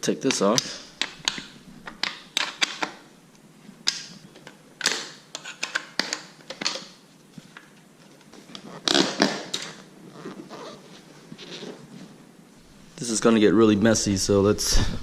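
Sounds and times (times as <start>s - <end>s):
hard parts clicking and knocking: 0.3s - 3.0s, 3.9s - 6.9s.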